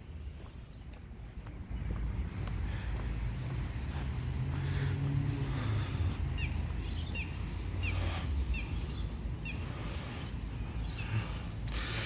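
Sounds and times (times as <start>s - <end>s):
low outdoor rumble: 0.0s - 12.0s
bird chirping: 5.1s - 12.0s.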